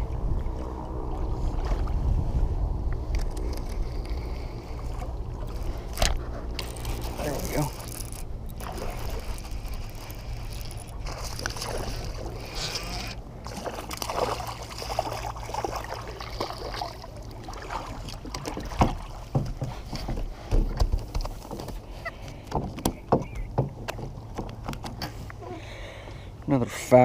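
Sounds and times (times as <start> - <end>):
water sloshing around kayak: 0.0 - 26.4.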